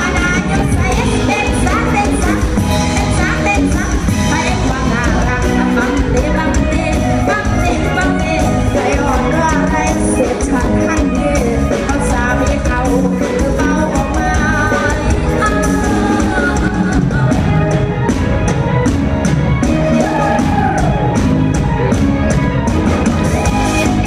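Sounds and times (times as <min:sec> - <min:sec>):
person singing: 0:00.0 - 0:18.0
band accompaniment: 0:00.0 - 0:24.0.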